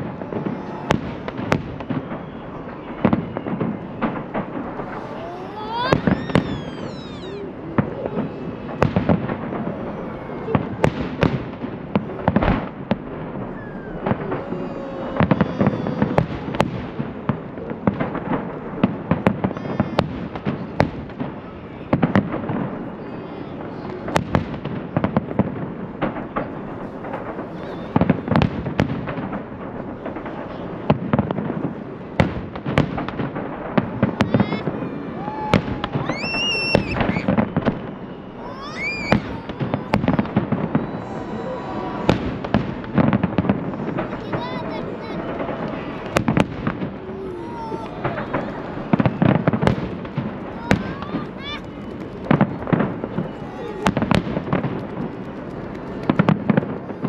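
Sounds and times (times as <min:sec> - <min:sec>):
firework whistles: 0:00.0 - 0:17.1, 0:33.8 - 0:44.3, 0:45.2 - 0:54.7
firework bangs: 0:00.0 - 0:57.0
fireworks rumble and crackle: 0:00.0 - 0:57.0.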